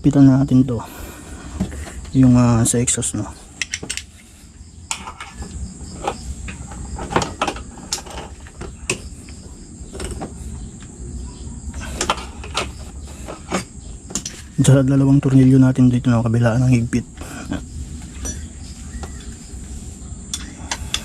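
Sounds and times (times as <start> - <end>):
hand tool clicking on metal bolts: 3.6 - 4.1.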